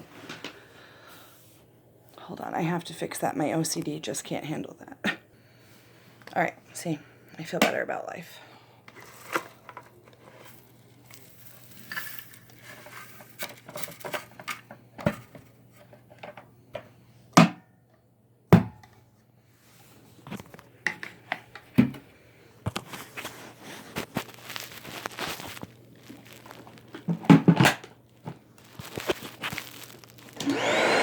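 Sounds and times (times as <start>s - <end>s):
rustling and crinkling: 8.9s - 16.3s, 19.6s - 21.8s, 22.6s - 30.4s.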